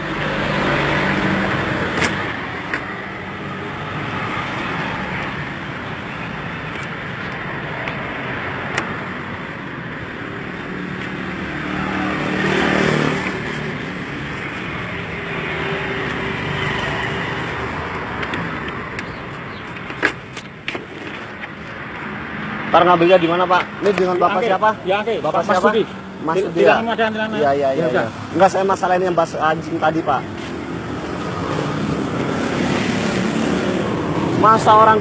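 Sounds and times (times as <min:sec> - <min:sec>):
road traffic passing: 0:00.0 - 0:35.0
vehicle passing close: 0:07.3 - 0:19.4, 0:29.9 - 0:35.0.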